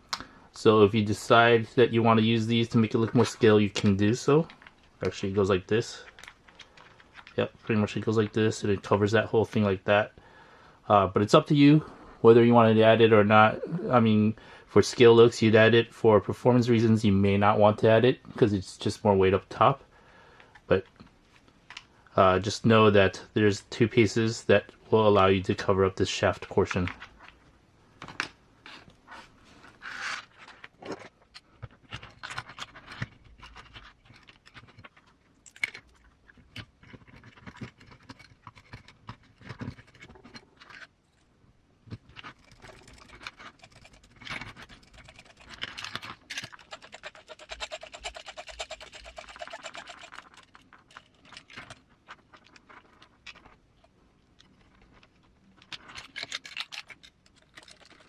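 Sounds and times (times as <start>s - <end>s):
small parts clicking and scraping: 2.0s - 8.4s, 28.0s - 58.0s.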